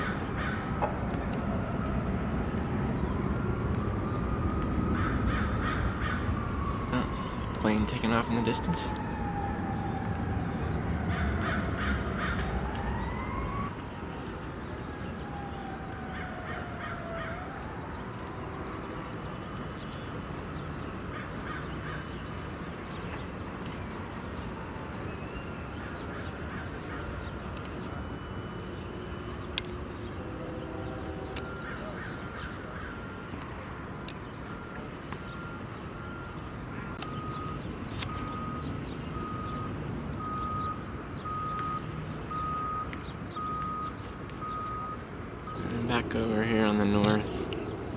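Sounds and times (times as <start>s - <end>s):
siren wailing: 0.0s - 19.8s, 23.7s - 47.9s
vehicle reversing alarm beeping: 0.7s - 21.0s, 22.2s - 47.8s
distant jet airliner taking off: 26.5s - 47.9s.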